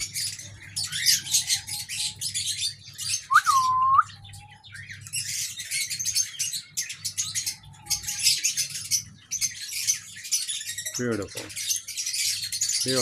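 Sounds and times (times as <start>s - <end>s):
birds chirping and chattering: 0.0s - 13.0s
loud whistled bird note: 3.2s - 4.1s.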